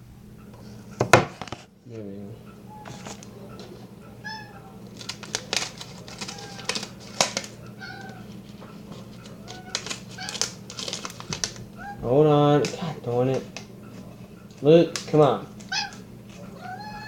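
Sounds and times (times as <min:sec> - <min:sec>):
steady low hum: 0:00.0 - 0:17.0
cat meowing: 0:04.0 - 0:04.8, 0:06.2 - 0:06.8, 0:07.7 - 0:08.3, 0:09.2 - 0:10.6, 0:11.8 - 0:12.1, 0:15.7 - 0:17.0.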